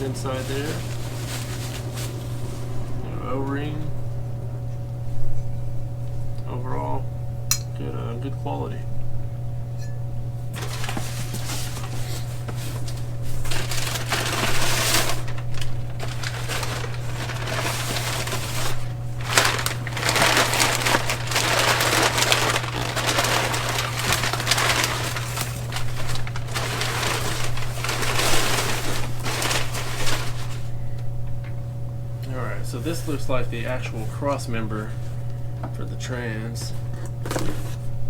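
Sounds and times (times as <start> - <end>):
packaging rustling and crinkling: 0.0 - 3.2, 10.5 - 30.9, 36.6 - 38.0
steady low hum: 0.0 - 38.0.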